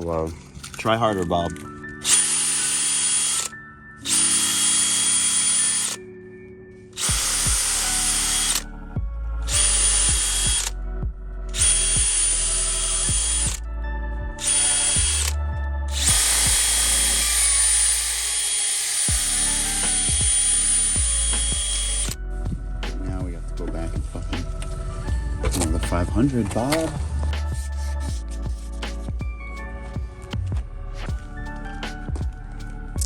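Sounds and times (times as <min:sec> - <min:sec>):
background music with deep bass: 0:00.0 - 0:33.0
power drill sanding plastic: 0:02.0 - 0:03.5, 0:04.1 - 0:06.0, 0:07.0 - 0:08.6, 0:11.6 - 0:13.6, 0:15.9 - 0:22.2.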